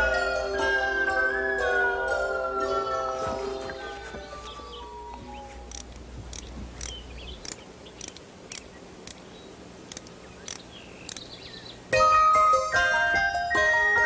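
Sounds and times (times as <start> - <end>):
sharp dry clicks: 5.7 - 11.5.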